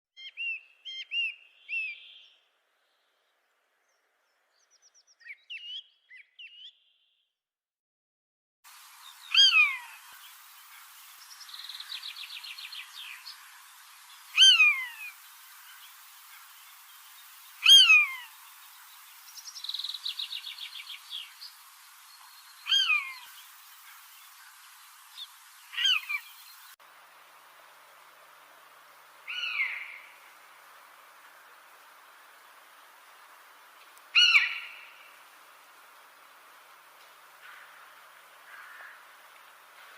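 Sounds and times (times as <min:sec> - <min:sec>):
dry rattling bird trills: 0:09.1 - 0:26.8, 0:38.5 - 0:39.0
bird whistling downward notes: 0:14.3 - 0:15.2.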